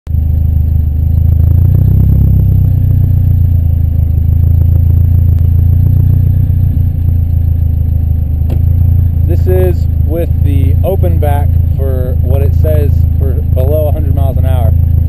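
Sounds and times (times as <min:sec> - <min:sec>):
car engine rumbling: 0:00.0 - 0:15.0.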